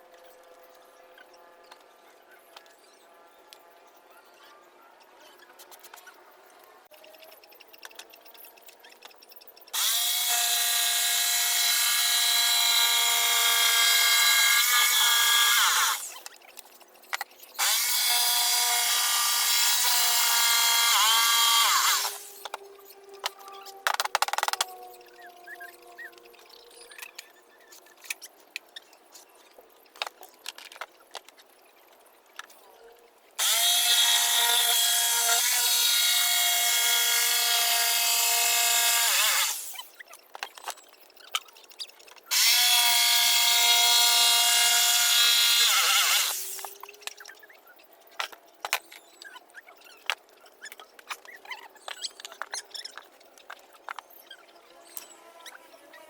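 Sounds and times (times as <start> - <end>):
power drill whining: 9.8 - 16.2, 17.6 - 22.5, 33.4 - 39.7, 42.3 - 46.6.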